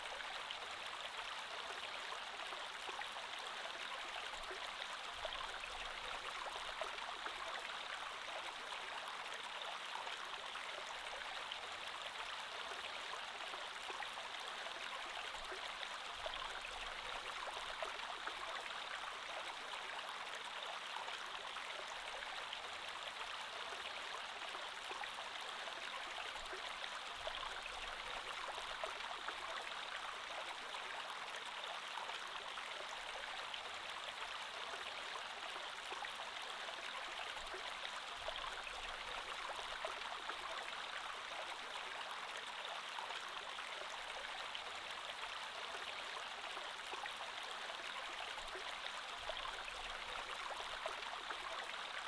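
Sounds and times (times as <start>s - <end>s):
creek water flowing over stones: 0.0s - 52.0s.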